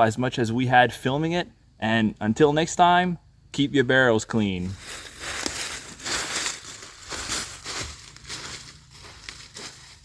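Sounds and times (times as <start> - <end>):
rustling and crunching: 4.6 - 10.0.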